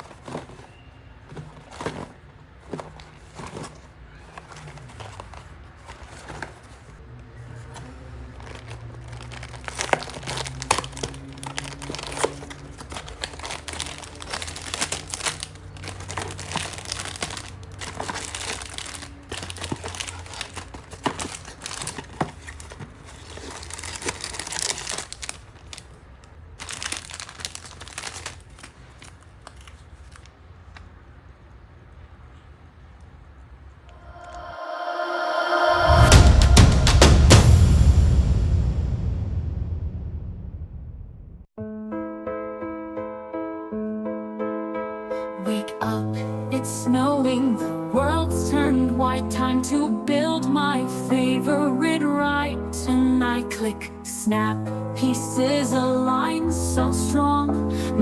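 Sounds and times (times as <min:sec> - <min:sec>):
plastic bags crinkling and tearing: 0:00.0 - 0:30.8.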